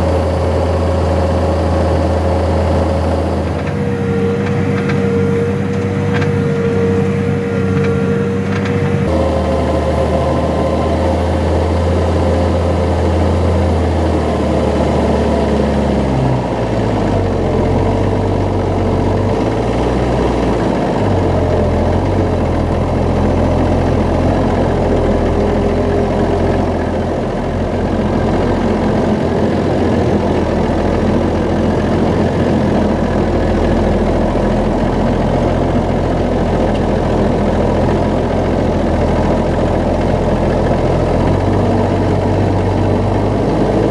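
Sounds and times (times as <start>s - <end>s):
tractor diesel engine running: 0.0s - 43.9s.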